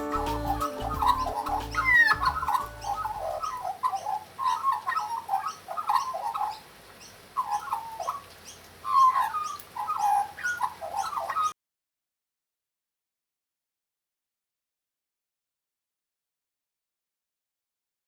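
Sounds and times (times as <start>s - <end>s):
background music: 0.0s - 3.4s
birds calling: 0.0s - 11.6s.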